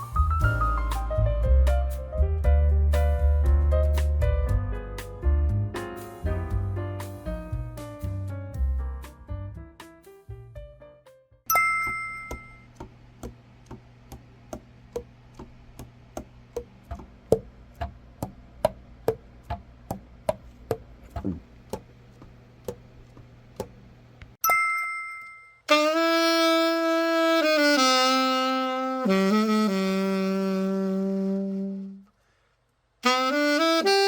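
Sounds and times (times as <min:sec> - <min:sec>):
short chime: 0:11.5 - 0:12.7
alto saxophone sustained notes: 0:25.7 - 0:32.1, 0:33.0 - 0:34.0.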